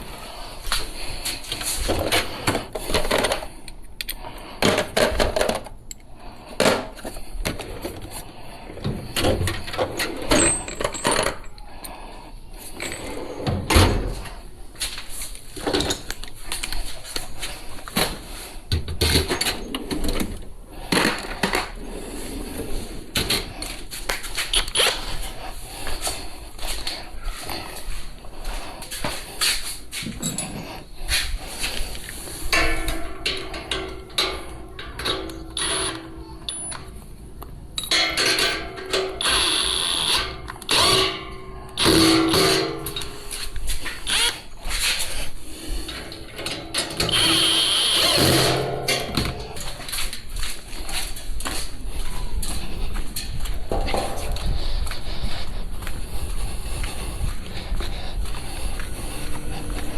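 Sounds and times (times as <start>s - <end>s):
metal parts clinking: 9.6s - 11.7s, 37.8s - 44.4s.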